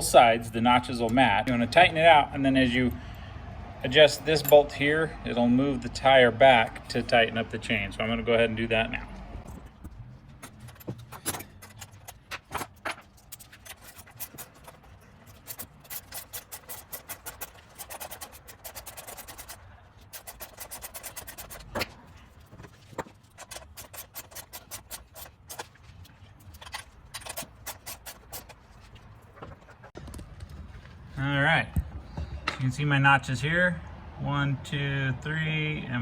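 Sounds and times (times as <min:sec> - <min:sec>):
ratchet wrench clicking: 0:13.2 - 0:21.8, 0:23.4 - 0:25.6.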